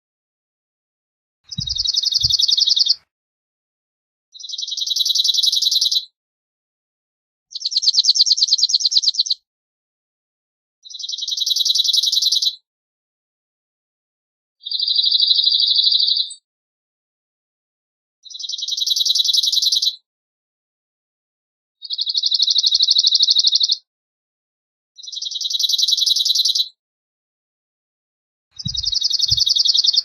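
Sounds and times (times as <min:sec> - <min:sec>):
bird singing dry trill: 0:01.5 - 0:03.0, 0:04.4 - 0:06.1, 0:07.5 - 0:09.4, 0:10.9 - 0:12.6, 0:14.7 - 0:16.4, 0:18.3 - 0:20.0, 0:21.8 - 0:23.9, 0:25.0 - 0:26.8, 0:28.6 - 0:30.0.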